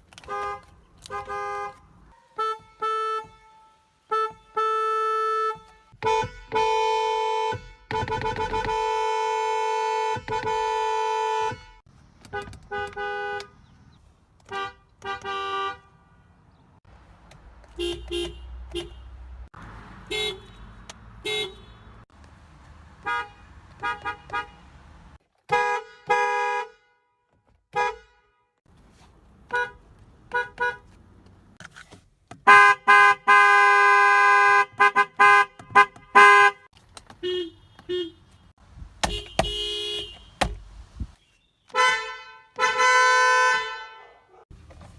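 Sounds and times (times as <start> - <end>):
road noise: 0.0 - 44.9
car horns honking: 0.2 - 13.8, 14.4 - 16.4, 17.7 - 22.1, 23.0 - 28.6, 29.4 - 31.0, 32.4 - 44.3.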